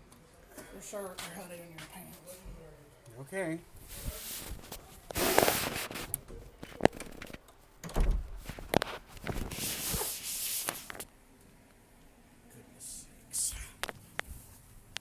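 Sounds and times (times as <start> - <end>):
fabric rustling: 3.8 - 6.1, 8.4 - 11.0.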